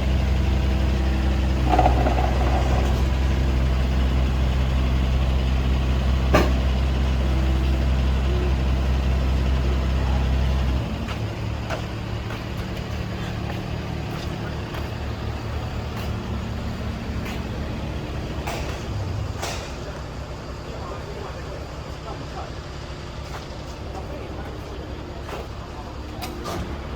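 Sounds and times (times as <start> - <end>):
excavator diesel engine running: 0.0 - 26.9.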